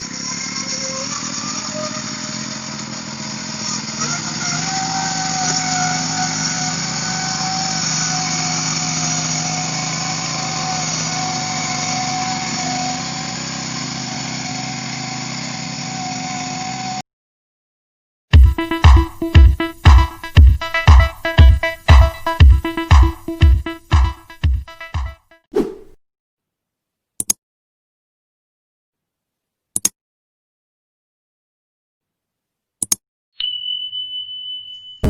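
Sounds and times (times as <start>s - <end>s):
small engine running: 0.0s - 17.0s.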